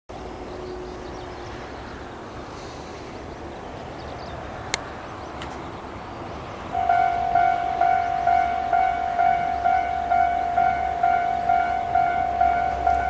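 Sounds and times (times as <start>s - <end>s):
steady high-pitched hiss: 0.1s - 13.0s
level crossing warning bell: 6.7s - 13.0s.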